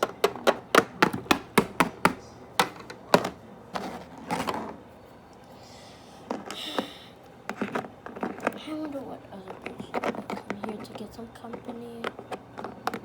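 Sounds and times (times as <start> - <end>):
plastic toys tapping on hard surface: 0.0 - 3.4, 7.5 - 13.0.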